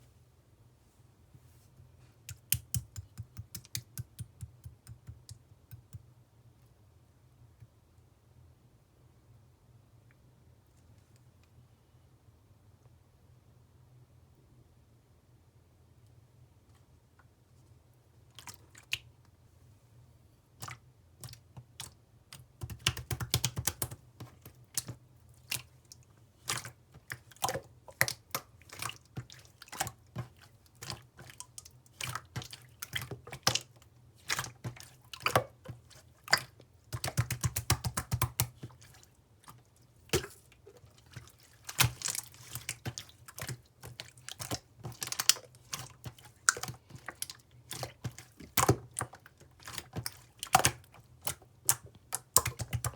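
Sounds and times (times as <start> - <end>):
slime squished by hand: 26.5 - 52.9.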